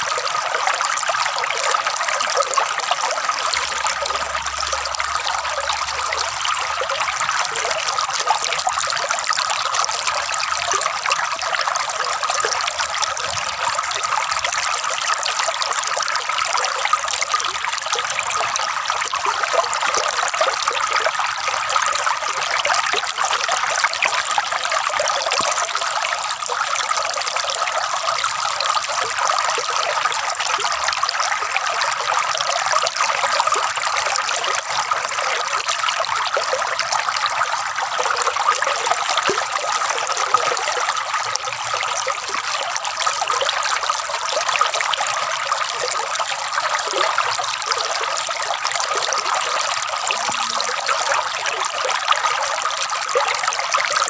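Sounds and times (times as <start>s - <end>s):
water trickling and gurgling: 0.0s - 54.0s.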